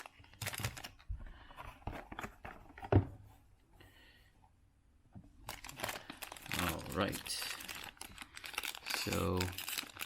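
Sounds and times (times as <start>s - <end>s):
packaging rustling: 0.0s - 2.9s, 5.4s - 10.0s.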